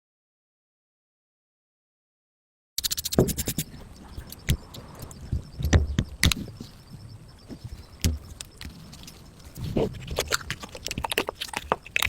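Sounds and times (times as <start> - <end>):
scraping: 2.8 - 12.0
sharp clicks: 2.8 - 12.0.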